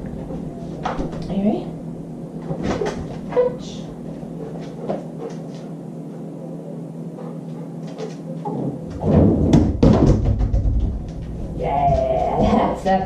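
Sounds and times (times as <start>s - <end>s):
loud low knocks: 8.5s - 12.6s.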